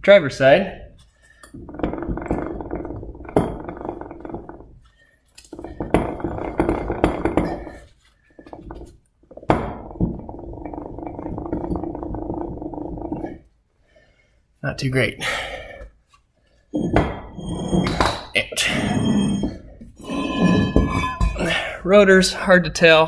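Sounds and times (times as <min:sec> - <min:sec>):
rough hum of spinning hub: 0:01.6 - 0:04.8, 0:05.6 - 0:07.8
wheel hub knock: 0:05.6 - 0:07.8.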